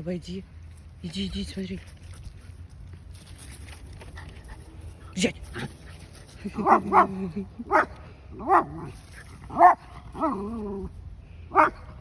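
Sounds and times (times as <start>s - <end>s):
small dog barking: 6.6s - 7.1s, 7.7s - 8.9s, 9.5s - 10.5s, 11.5s - 11.8s.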